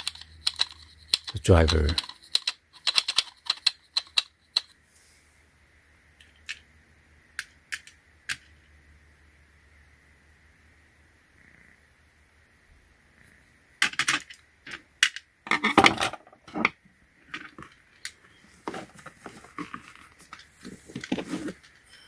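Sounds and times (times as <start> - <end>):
metal tools clinking and rattling: 15.5 - 16.7.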